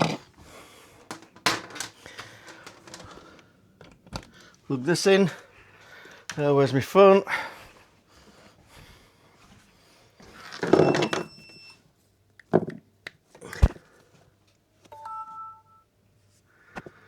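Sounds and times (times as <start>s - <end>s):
phone handling rustling: 1.0s - 4.6s.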